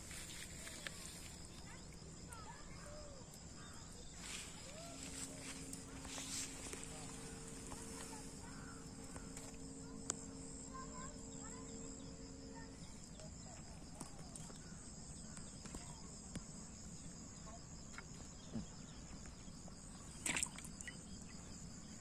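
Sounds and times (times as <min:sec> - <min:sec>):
crickets chirping: 0:00.0 - 0:22.0.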